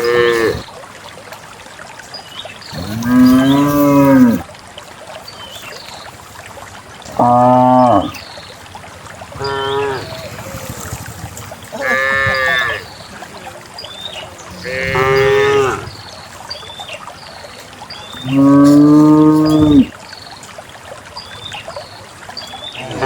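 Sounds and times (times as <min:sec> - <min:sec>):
cows mooing: 0:00.0 - 0:00.7, 0:02.7 - 0:04.4, 0:07.1 - 0:08.2, 0:09.4 - 0:12.9, 0:14.5 - 0:15.9, 0:18.2 - 0:19.9, 0:22.8 - 0:23.0.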